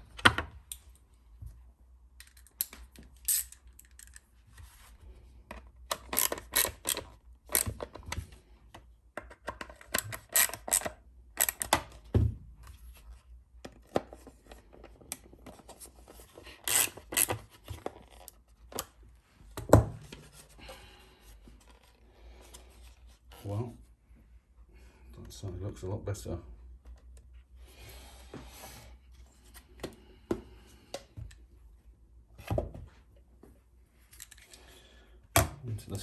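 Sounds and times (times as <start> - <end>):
plastic parts clicking and scraping: 2.2 - 4.8, 5.5 - 12.0, 13.6 - 19.0, 34.0 - 34.7.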